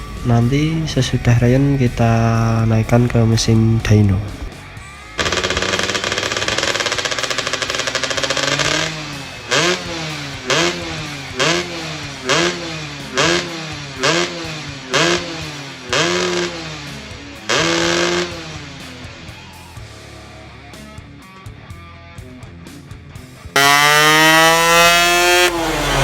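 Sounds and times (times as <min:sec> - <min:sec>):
motorcycle engine revving: 0:05.1 - 0:19.4, 0:23.5 - 0:26.0.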